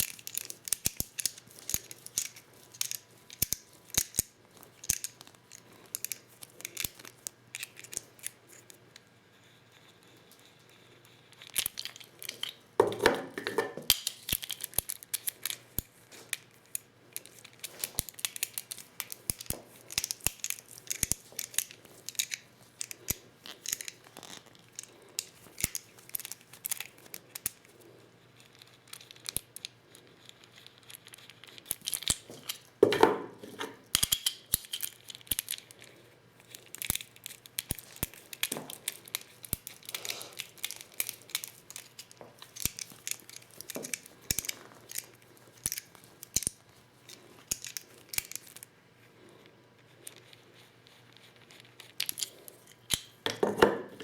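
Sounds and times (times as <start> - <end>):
clicks and taps of reloading tools: 31.7 - 35.6.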